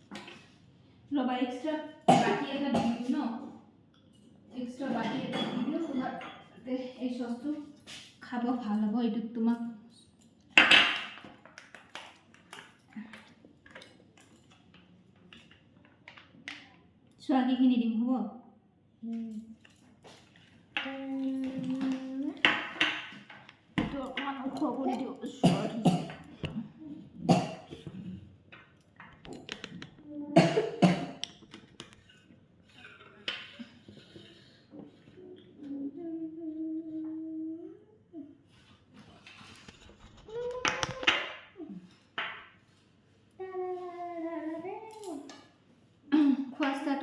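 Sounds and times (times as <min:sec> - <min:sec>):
utensils and dishes clinking: 0:04.1 - 0:06.9, 0:09.6 - 0:15.8.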